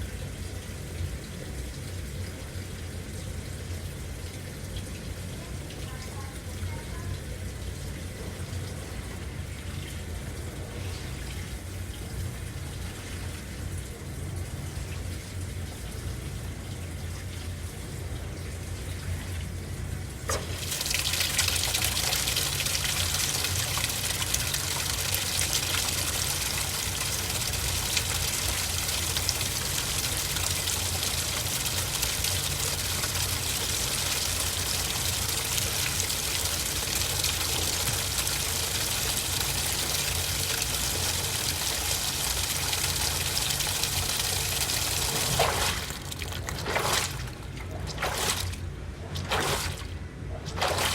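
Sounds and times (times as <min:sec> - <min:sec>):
washing machine taking in water: 0:00.0 - 0:50.9
steady low hum: 0:07.8 - 0:50.9.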